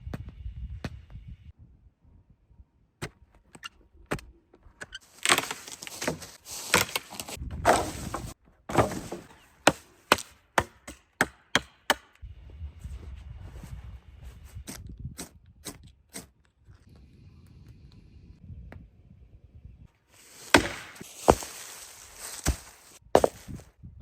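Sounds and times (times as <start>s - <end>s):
rough wood working noise: 5.0s - 10.3s, 20.2s - 23.6s
wood chopping blows: 5.2s - 12.2s, 20.4s - 23.6s
sharp strikes on wood: 7.7s - 12.2s, 20.5s - 21.5s.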